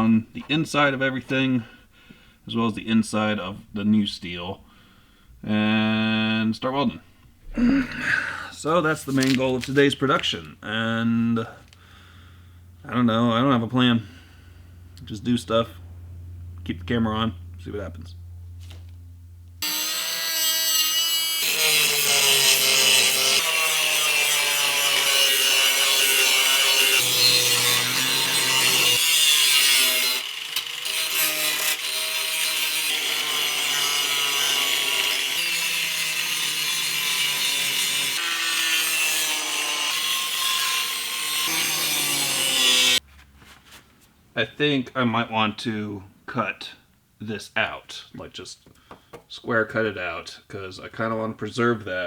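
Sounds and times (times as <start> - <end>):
power tool grinding steel: 19.6 - 43.0.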